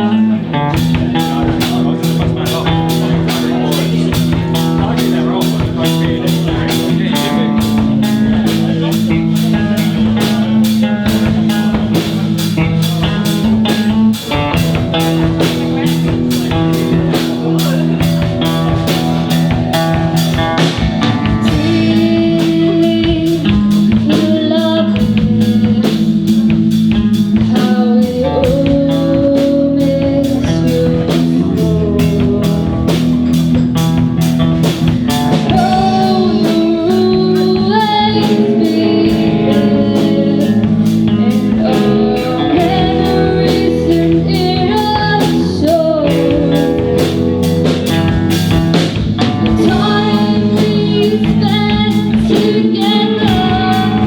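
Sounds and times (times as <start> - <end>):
bass: 0.0 - 54.0
drum kit beat: 0.0 - 54.0
electric guitar: 0.0 - 54.0.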